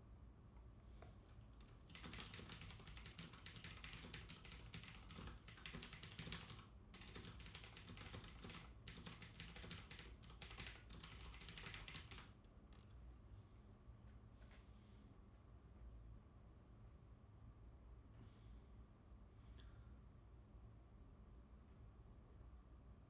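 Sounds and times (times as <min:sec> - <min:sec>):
fast typing on keyboard: 0:01.5 - 0:12.8.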